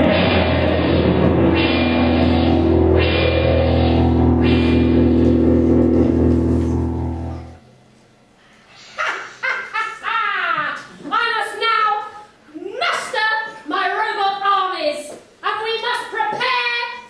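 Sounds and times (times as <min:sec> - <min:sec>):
electric guitar rock music: 0:00.0 - 0:07.6
low drone: 0:00.0 - 0:07.6.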